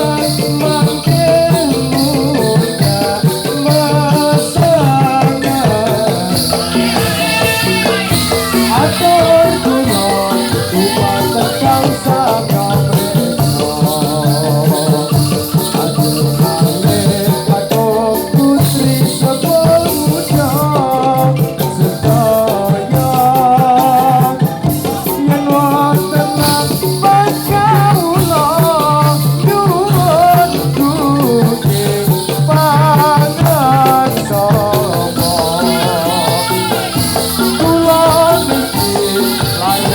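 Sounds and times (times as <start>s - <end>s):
jingling ankle bells: 0.0s - 39.9s
steady drum beat: 0.0s - 39.9s
wavering sung melody: 0.0s - 39.9s.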